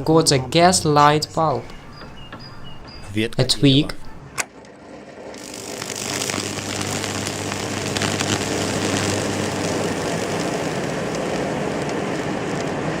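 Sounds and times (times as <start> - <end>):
electric arc buzzing hum: 5.2 - 13.0
electric arc sharp snaps: 5.4 - 13.0.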